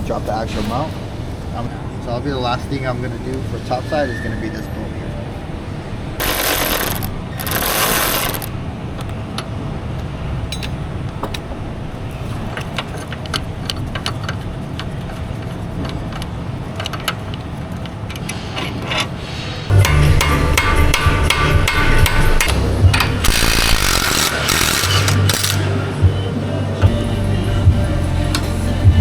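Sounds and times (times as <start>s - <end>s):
shop background noise: 0.0s - 29.0s
air tool bursts: 6.2s - 8.5s, 22.4s - 25.7s
metallic clicks of tools: 20.6s - 25.7s.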